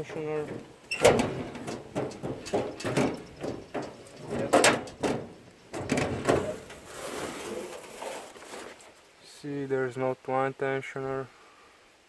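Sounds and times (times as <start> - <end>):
metal parts knocking and clattering: 0.0 - 6.8.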